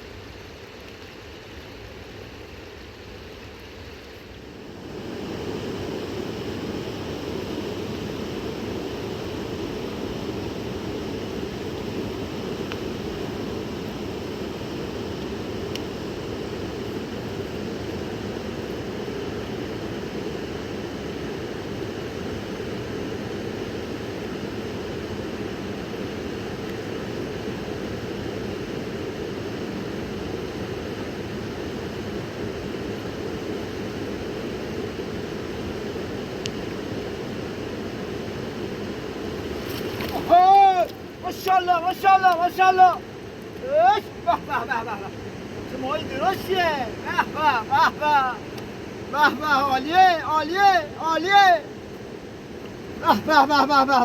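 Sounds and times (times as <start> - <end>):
river water rushing: 1.3 - 54.0.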